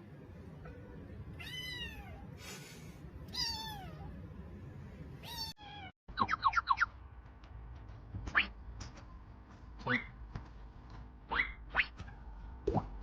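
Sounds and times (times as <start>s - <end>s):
cat meowing: 1.3s - 2.3s, 3.3s - 4.1s, 5.2s - 5.9s.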